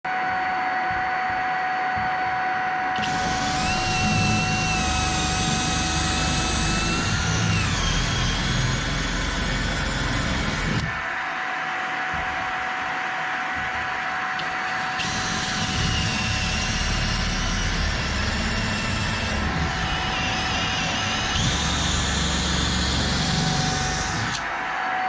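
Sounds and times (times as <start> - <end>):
electric drill whining: 3.0 - 11.0, 13.5 - 25.0.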